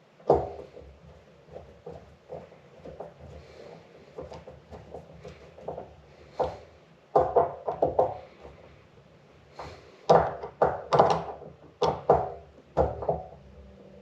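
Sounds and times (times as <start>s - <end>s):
hand tools knocking on workbench: 6.4s - 8.2s, 10.1s - 13.4s.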